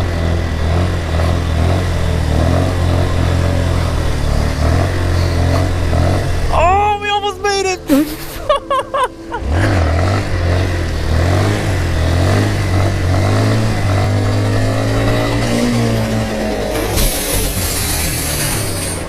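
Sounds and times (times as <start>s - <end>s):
motorcycle engine under throttle: 0.0s - 7.2s, 9.4s - 19.0s.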